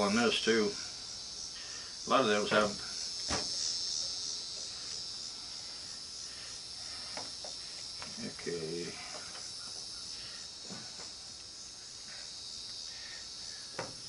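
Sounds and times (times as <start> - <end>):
insect chorus chirring: 0.0 - 14.0.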